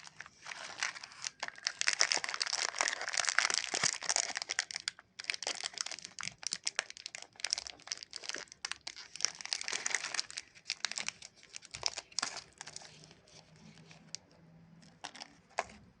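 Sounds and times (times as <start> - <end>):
plastic wrapper crinkling: 0.0 - 16.0.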